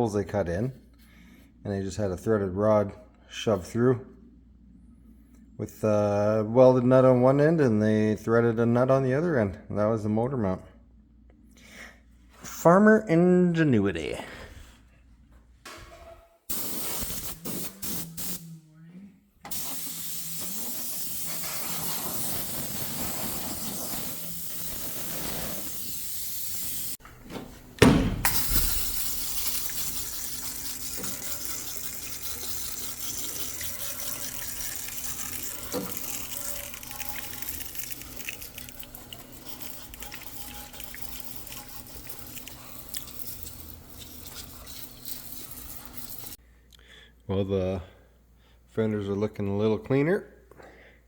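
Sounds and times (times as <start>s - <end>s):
water spray hissing on metal: 16.5s - 18.4s, 19.5s - 27.0s, 28.3s - 46.4s.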